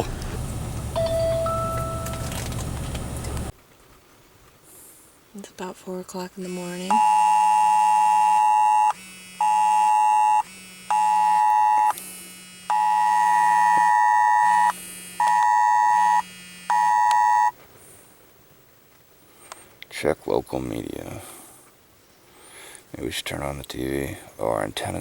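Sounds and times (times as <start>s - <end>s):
phone emergency alert two-tone blare: 1.0s - 2.4s, 6.5s - 12.0s, 12.7s - 17.6s.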